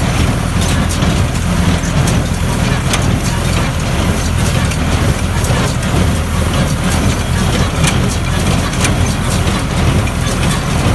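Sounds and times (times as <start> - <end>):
tractor diesel engine running: 0.0 - 10.9.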